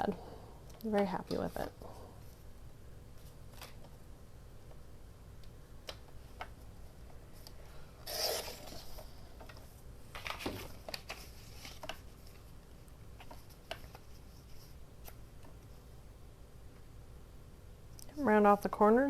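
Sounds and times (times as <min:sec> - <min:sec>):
paper rustling: 0:03.2 - 0:04.0, 0:07.4 - 0:12.5, 0:13.1 - 0:15.5.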